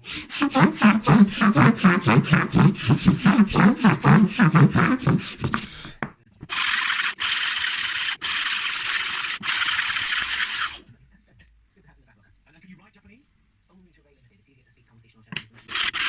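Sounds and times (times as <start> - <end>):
hand tool working wood: 0.0 - 10.8, 15.4 - 16.0.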